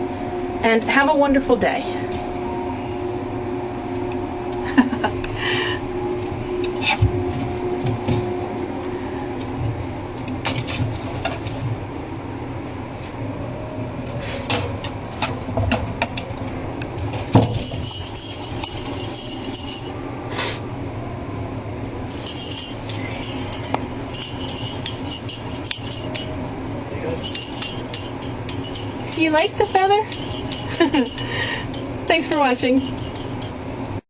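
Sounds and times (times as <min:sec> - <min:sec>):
cat toy clinking and rattling: 0:17.3 - 0:20.0, 0:22.1 - 0:33.6.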